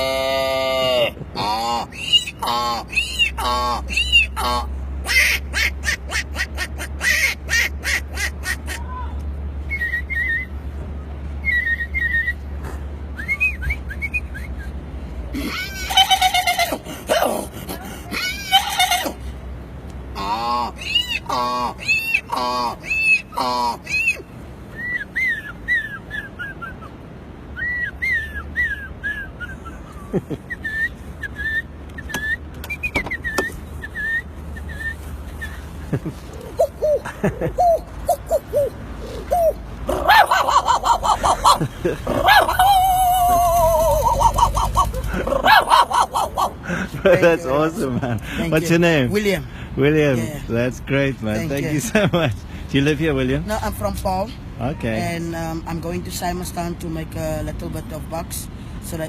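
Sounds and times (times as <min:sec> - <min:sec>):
bird-like whistles: 0:09.7 - 0:10.6, 0:11.4 - 0:12.5, 0:23.9 - 0:26.9, 0:27.6 - 0:29.8, 0:30.5 - 0:35.6.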